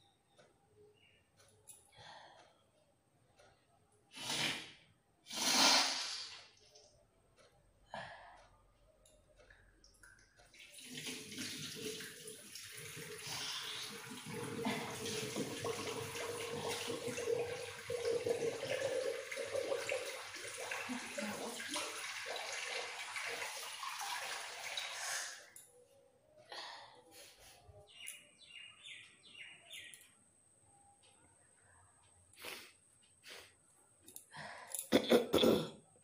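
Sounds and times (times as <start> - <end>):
tap water running into basin: 10.0 - 25.6.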